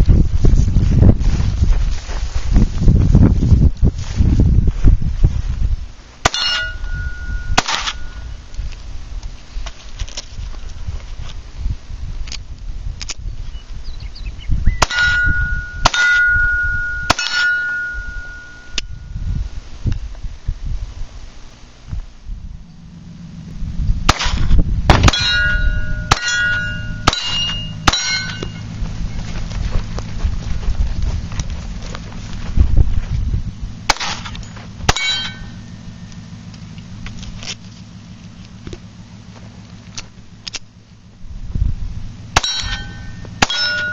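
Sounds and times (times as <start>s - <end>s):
gunshots hitting ringing steel target: 6.2s - 8.2s, 14.8s - 18.8s, 24.1s - 28.7s, 33.9s - 35.7s, 42.4s - 43.9s
pistol shots: 7.6s - 8.1s, 14.8s - 16.4s, 24.1s - 28.5s, 33.9s - 35.4s
faint gunshot pops: 24.1s - 25.2s.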